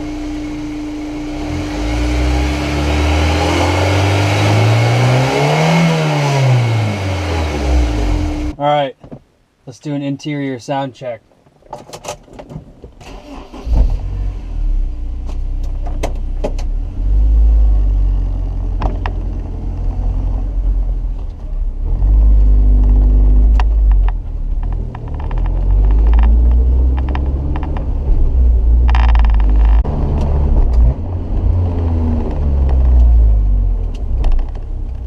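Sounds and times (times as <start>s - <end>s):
car engine revving: 0.0s - 8.6s, 21.7s - 35.0s.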